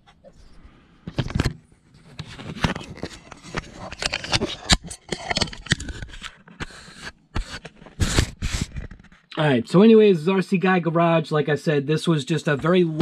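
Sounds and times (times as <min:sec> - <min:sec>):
clicks knocks and scrapes: 0:00.0 - 0:09.3.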